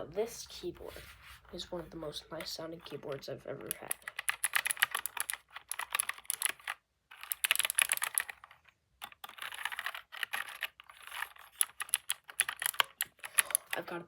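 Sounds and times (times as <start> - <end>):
typing on computer keyboard: 3.1 - 14.0.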